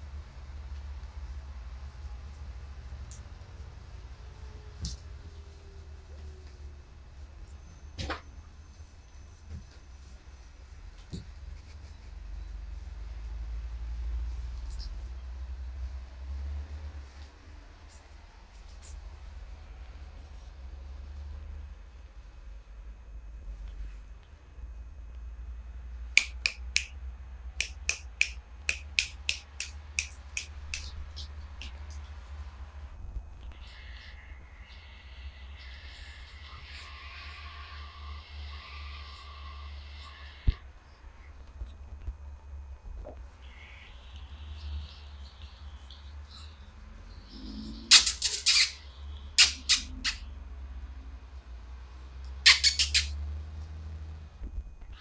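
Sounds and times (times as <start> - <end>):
steady low hum: 0.0 - 55.0
puppies squeaking: 47.9 - 50.3, 52.4 - 53.2.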